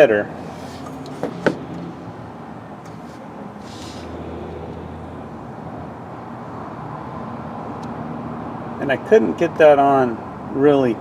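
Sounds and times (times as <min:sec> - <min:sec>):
brief hiss: 0:03.6 - 0:04.1.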